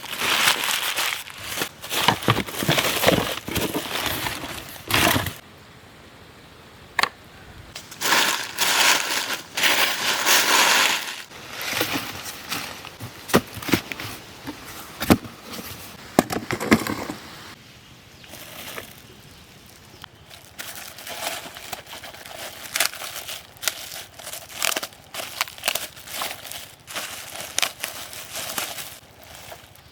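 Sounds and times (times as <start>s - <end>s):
packaging crinkling and rustling: 0.0s - 5.4s, 7.8s - 14.2s, 20.3s - 29.9s.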